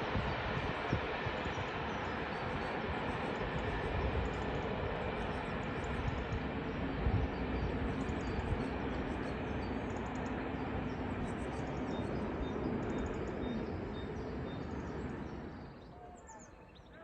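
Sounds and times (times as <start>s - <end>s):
faint train engine tone: 1.2s - 17.0s.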